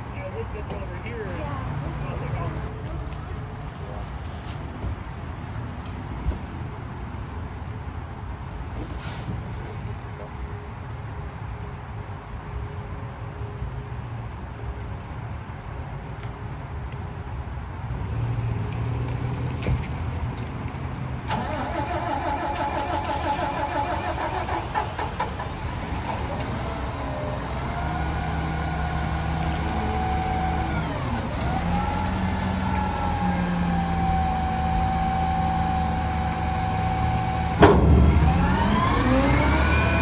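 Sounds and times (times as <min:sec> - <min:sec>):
garbage truck engine whining: 0:21.3 - 0:40.0.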